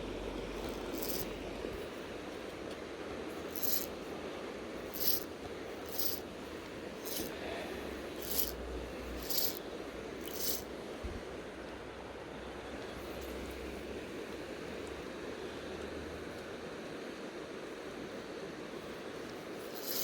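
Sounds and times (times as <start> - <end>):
fly line hissing pulls: 0.6 - 1.4, 3.4 - 4.0, 4.8 - 6.3, 7.0 - 9.6, 10.2 - 10.7, 19.6 - 20.0.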